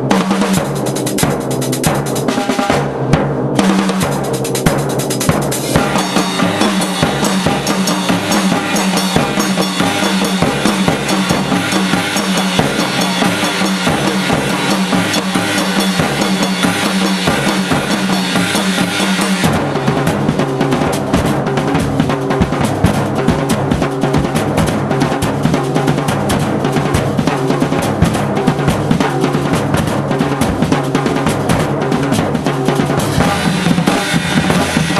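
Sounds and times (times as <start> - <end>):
drum kits and hand percussion: 0.0 - 34.9
bright cymbal wash: 5.8 - 19.5.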